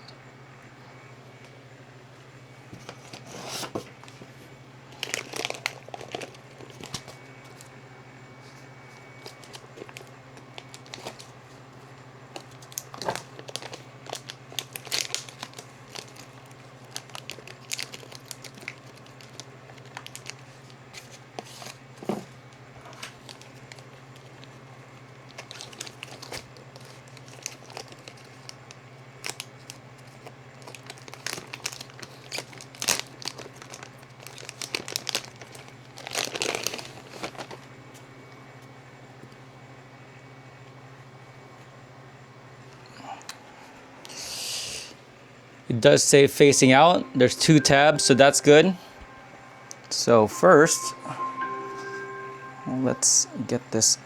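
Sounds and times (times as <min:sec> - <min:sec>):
plastic packaging crinkling and tearing: 0:05.0 - 0:07.7, 0:09.2 - 0:11.4, 0:12.4 - 0:21.8, 0:25.3 - 0:37.7.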